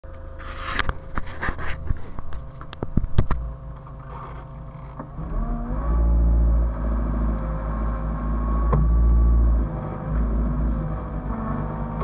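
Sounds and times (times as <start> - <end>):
excavator diesel engine: 0.2 - 12.0
sharp clicks and knocks: 0.8 - 4.0.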